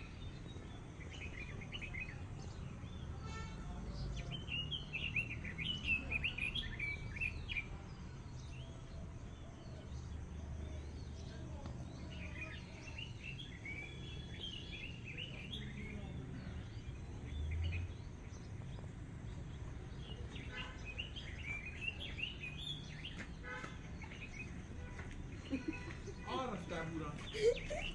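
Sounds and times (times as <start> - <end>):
birds chirping and twittering: 0.0 - 27.9.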